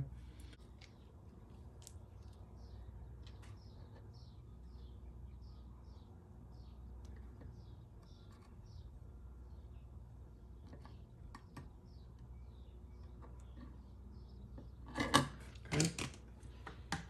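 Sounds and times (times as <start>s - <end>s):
small bird chirping: 0.4s - 15.1s.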